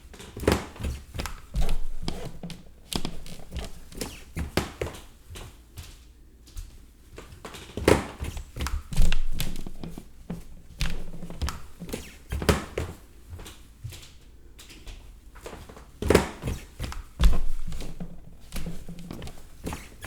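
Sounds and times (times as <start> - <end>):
wooden stairs creaking: 0.2 - 5.1, 7.6 - 13.5, 15.4 - 20.0
footsteps on wooden stairs: 0.2 - 6.8, 7.4 - 20.0.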